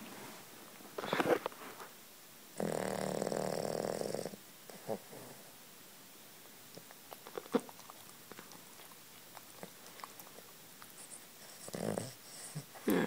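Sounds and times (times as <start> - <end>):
puppy snoring: 2.6 - 5.5, 6.8 - 13.0
puppy mouth clicks and smacks: 6.7 - 11.0.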